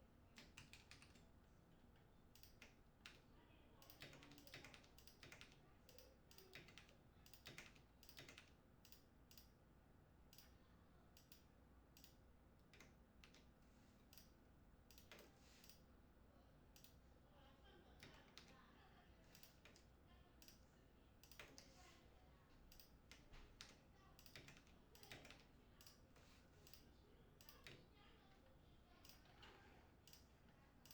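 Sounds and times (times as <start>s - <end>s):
mechanical keyboard typing: 3.8s - 9.0s, 23.6s - 26.0s.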